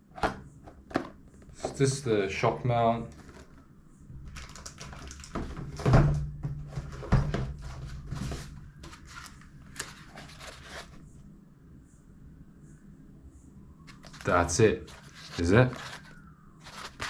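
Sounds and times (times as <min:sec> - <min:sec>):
packaging rustles and clicks: 0:03.1 - 0:03.6, 0:04.2 - 0:05.8, 0:07.6 - 0:11.0, 0:13.9 - 0:17.0.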